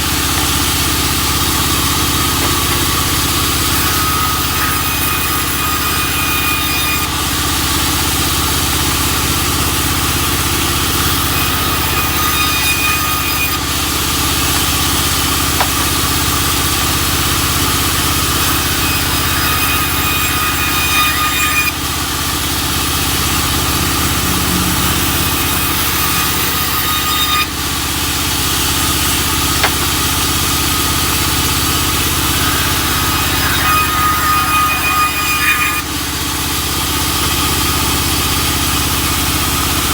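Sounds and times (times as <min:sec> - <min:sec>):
sawmill engine running: 0:00.0 - 0:39.9
thin high whine: 0:23.0 - 0:26.8.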